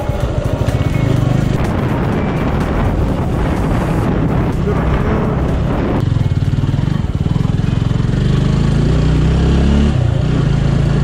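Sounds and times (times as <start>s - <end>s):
wind rushing over microphone: 0.0s - 6.4s
motorcycle engine running: 0.0s - 11.0s.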